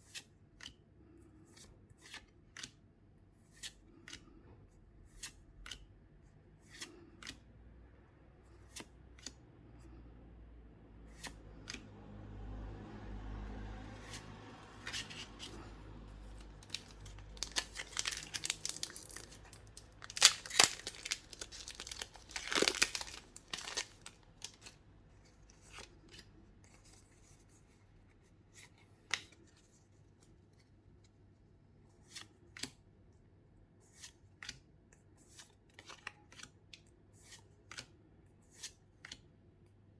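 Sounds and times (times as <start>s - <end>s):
cardboard and wrapper rustling: 16.3s - 24.8s
packaging tearing and crinkling: 16.5s - 24.7s.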